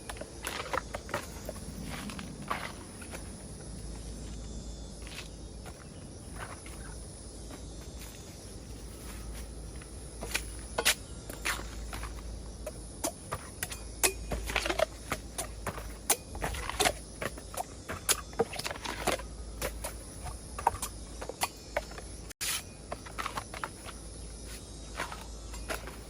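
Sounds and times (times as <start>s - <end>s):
steady low rumble: 0.8s - 13.0s.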